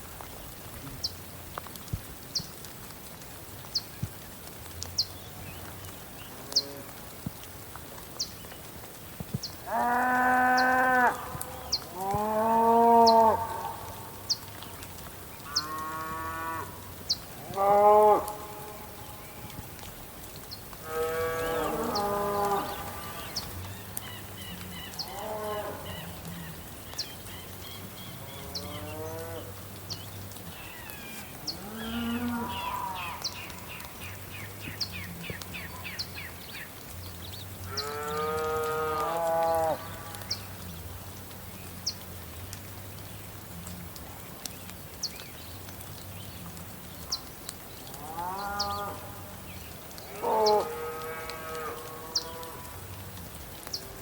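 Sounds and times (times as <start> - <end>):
soft rain hissing: 0.0 - 54.0
cows mooing: 12.0 - 13.8, 17.4 - 18.9, 20.8 - 23.4, 31.5 - 33.2, 50.1 - 52.7.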